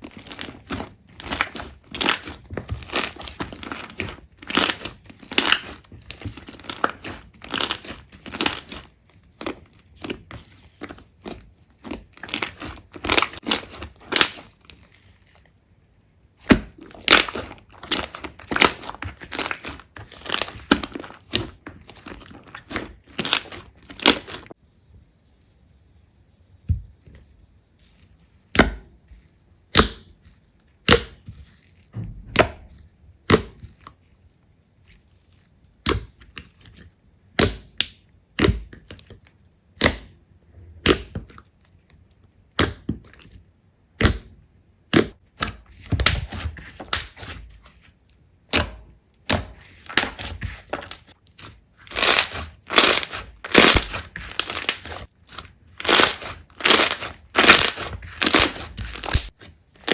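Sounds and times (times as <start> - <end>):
slime popping: 0.1 - 14.5, 16.4 - 24.5, 48.5 - 59.9
slime crackling and clicking: 48.5 - 59.9.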